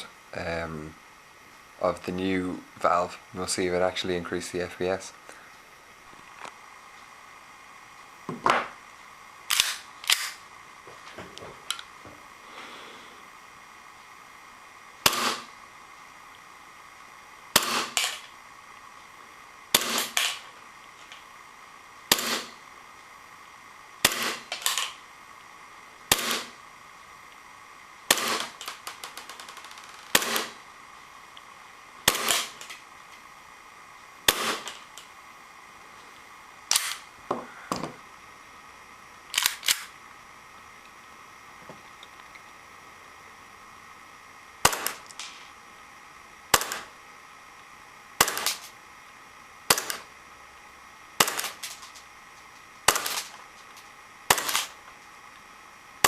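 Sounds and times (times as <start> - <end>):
airsoft pistol shots: 15.0 - 15.5, 17.5 - 18.2, 19.7 - 20.4, 22.1 - 22.6, 24.0 - 24.9, 26.1 - 26.6, 28.1 - 28.8, 30.1 - 30.6, 32.0 - 32.7, 34.3 - 34.8, 44.6 - 45.0, 46.5 - 46.9, 48.2 - 48.7, 49.7 - 50.1, 51.2 - 51.8, 52.8 - 53.4, 54.3 - 54.8.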